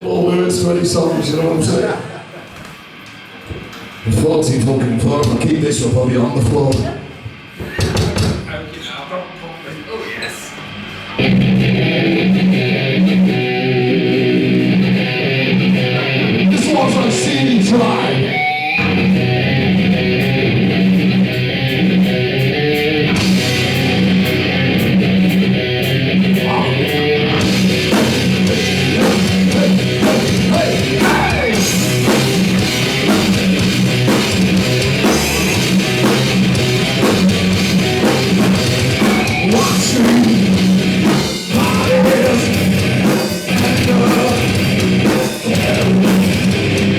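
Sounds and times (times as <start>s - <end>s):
live metal band playing: 10.8s - 46.9s.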